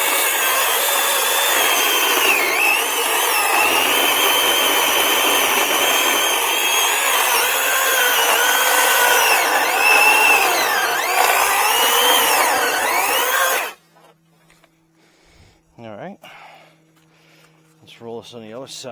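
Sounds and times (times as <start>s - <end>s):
electric chainsaw cutting log: 0.0s - 13.8s.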